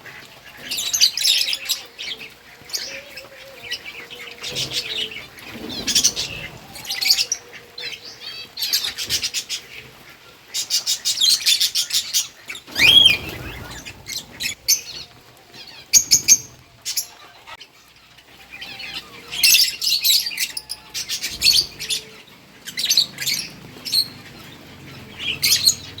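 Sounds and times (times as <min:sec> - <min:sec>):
lovebirds chirping: 0:00.0 - 0:26.0.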